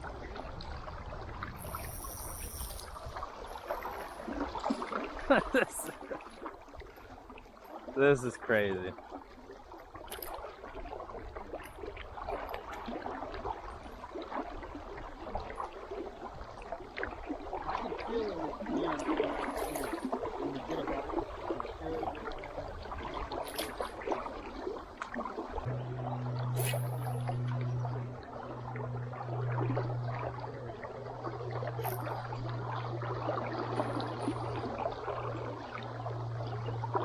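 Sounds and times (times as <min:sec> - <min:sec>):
river water gurgling and splashing: 0:00.0 - 0:37.0
steady low hum: 0:25.4 - 0:37.0.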